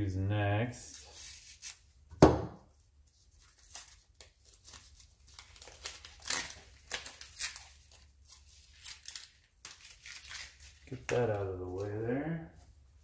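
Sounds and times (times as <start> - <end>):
paper and tape tearing: 0.9 - 1.8, 3.4 - 11.9.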